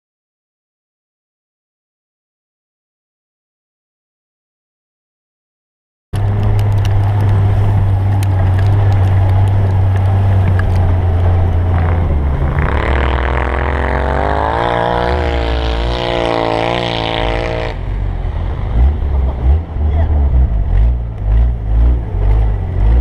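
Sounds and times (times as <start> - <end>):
off-road vehicle engine revving: 6.2 - 23.0.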